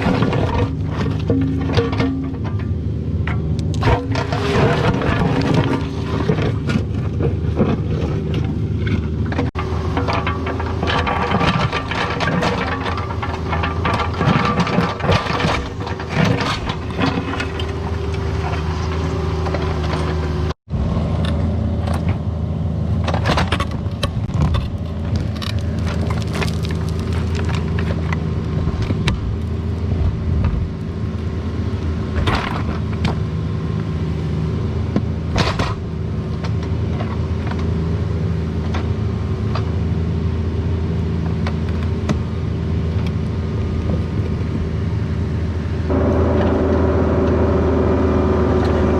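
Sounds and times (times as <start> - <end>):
excavator diesel engine running: 0.0 - 28.8, 36.0 - 48.9
bucket scraping dirt and stone: 3.8 - 8.2, 9.5 - 20.1, 24.5 - 28.0.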